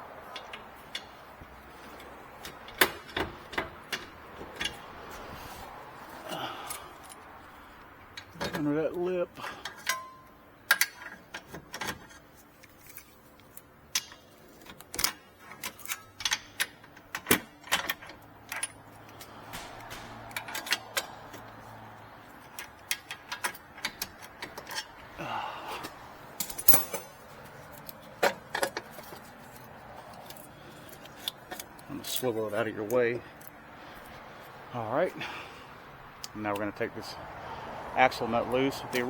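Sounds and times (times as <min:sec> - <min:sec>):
pry bar clanking on metal: 0:19.4 - 0:21.6.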